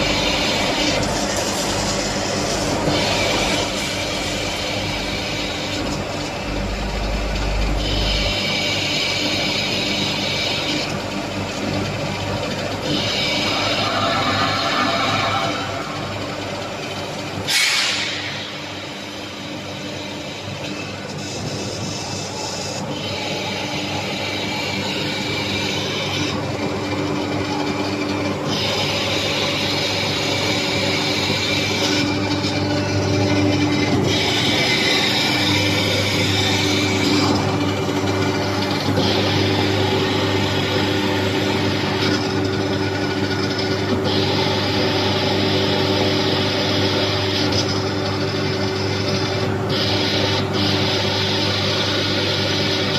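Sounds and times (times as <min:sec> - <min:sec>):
machinery electric hum: 0:00.0 - 0:52.9
hissing grinding noise: 0:12.4 - 0:17.7.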